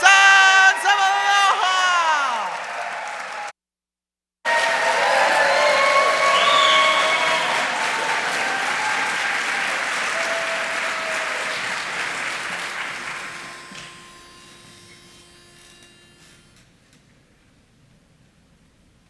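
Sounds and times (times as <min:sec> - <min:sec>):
audience applauding: 0:00.0 - 0:03.5, 0:04.5 - 0:14.9.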